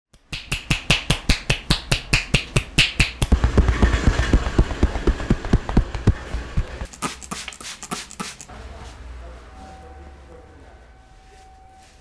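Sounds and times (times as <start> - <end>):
rapid massage slaps: 0.2 - 8.5.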